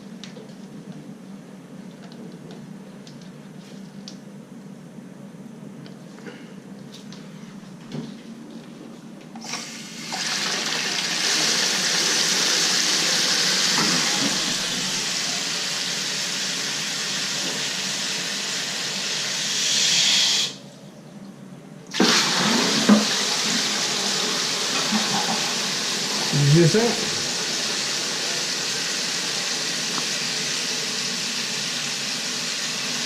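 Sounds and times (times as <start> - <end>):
water rushing into toilet tank: 9.4 - 20.6, 21.9 - 33.0.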